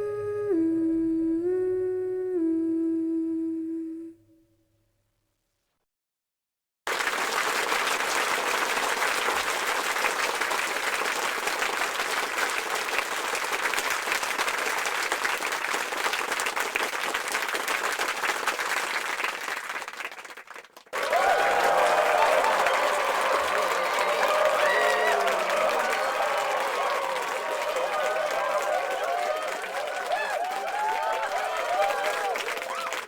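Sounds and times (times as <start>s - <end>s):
crowd applause: 6.9s - 33.0s.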